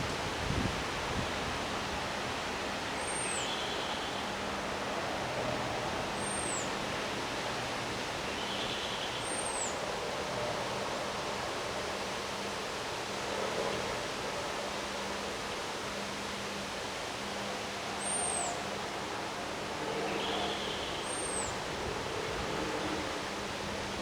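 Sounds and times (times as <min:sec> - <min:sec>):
wind and rain hissing: 0:00.0 - 0:03.0.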